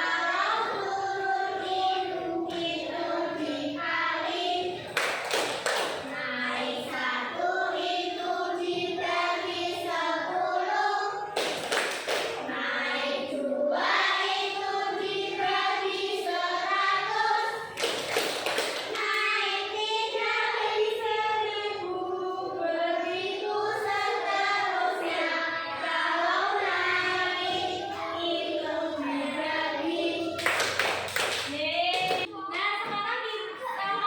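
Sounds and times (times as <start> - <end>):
children singing in unison: 0.0 - 31.3.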